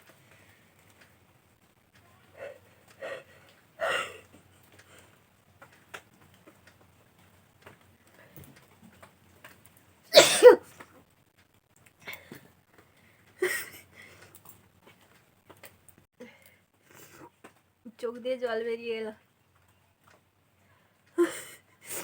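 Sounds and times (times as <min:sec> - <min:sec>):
woman sneezing: 0:10.1 - 0:10.6
quiet sounds before sneeze: 0:10.1 - 0:10.7.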